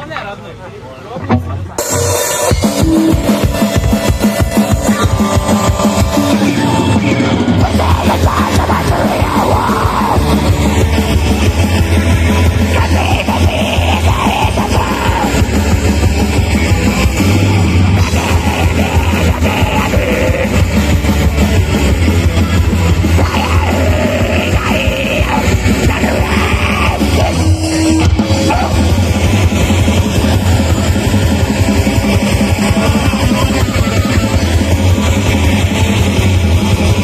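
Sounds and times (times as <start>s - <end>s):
distorted guitars: 1.2s - 37.0s
drum kit pounding fast beat: 1.3s - 37.0s
harsh shouted vocals: 2.5s - 37.0s.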